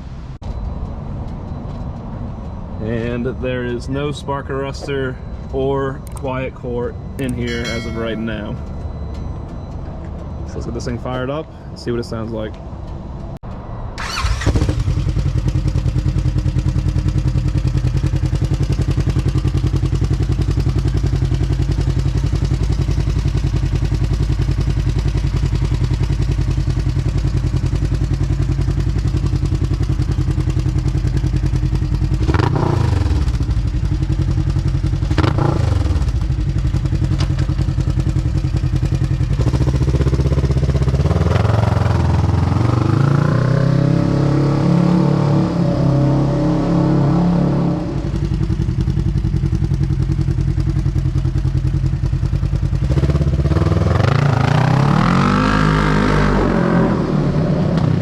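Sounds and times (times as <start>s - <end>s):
engine starting idling and revving: 13.9s - 28.0s, 29.0s - 51.0s, 52.6s - 58.0s.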